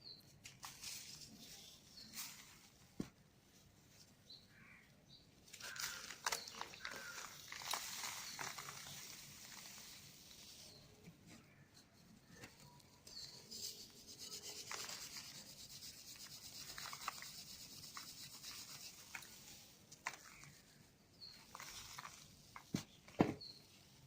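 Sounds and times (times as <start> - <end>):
sharp crackles: 5.5 - 10.0
cement crumbling and crunching: 5.6 - 9.7.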